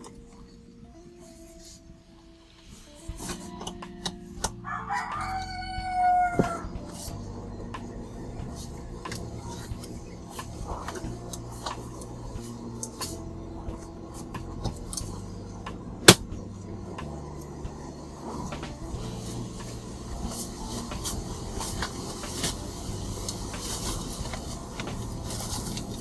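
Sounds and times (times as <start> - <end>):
low steady hum: 0.0 - 26.0
sharp loud click: 16.0 - 16.3.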